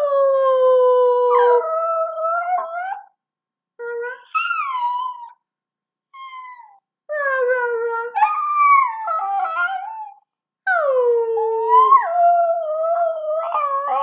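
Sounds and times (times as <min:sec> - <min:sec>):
dog howling: 0:00.0 - 0:03.1, 0:06.2 - 0:14.0.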